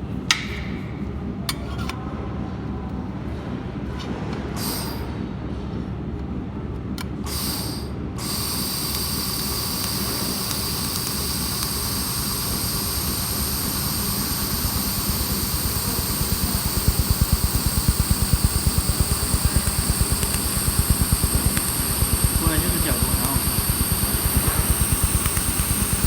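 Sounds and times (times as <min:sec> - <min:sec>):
welding machine humming and whining: 0:04.6 - 0:05.1, 0:07.2 - 0:26.0
rhythmic pulsing: 0:08.9 - 0:26.0.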